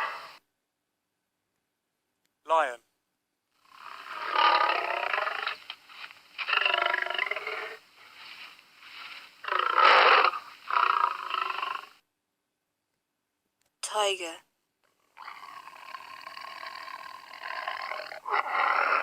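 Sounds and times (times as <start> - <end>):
lion roaring: 3.8 - 11.9, 15.2 - 19.0.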